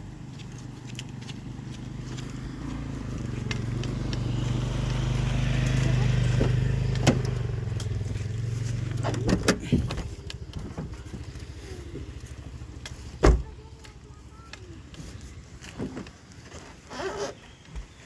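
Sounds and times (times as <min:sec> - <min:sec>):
vehicle engine droning: 0:00.0 - 0:18.0
heavy thump: 0:13.2 - 0:13.6.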